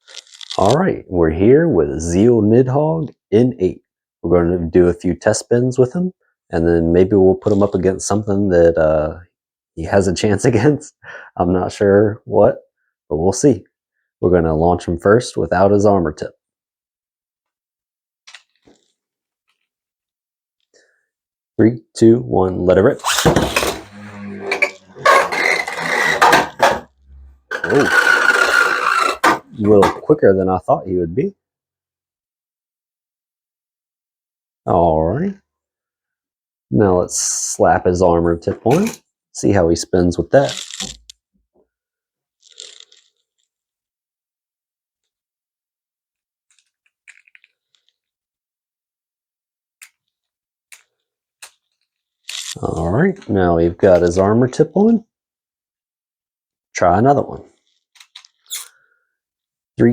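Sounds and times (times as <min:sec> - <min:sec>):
spinning top launcher rip: 0:23.0 - 0:26.9, 0:27.5 - 0:29.6
small plastic clicks and rattles: 0:46.5 - 0:47.9.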